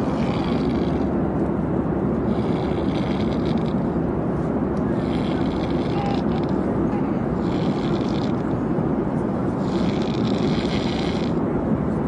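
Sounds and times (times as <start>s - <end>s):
airliner cabin drone: 0.0s - 12.0s
man snoring loudly: 0.2s - 1.1s, 2.3s - 3.8s, 5.0s - 6.5s, 7.4s - 8.4s, 9.6s - 11.4s.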